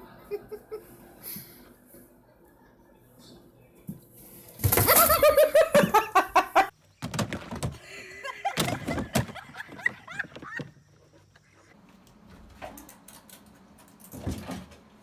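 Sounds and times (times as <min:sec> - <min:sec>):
person laughing: 0:04.7 - 0:06.7, 0:07.8 - 0:11.7
knocks and thumps: 0:07.0 - 0:07.8, 0:08.6 - 0:10.8.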